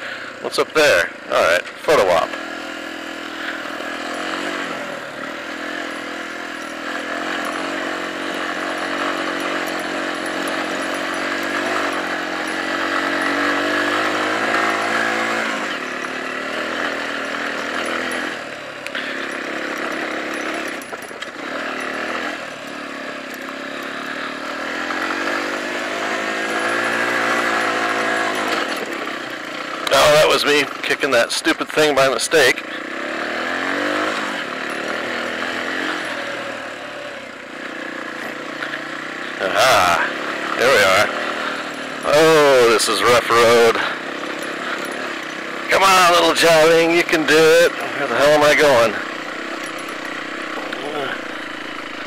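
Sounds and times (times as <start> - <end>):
motorcycle engine revving: 0.0 - 52.0.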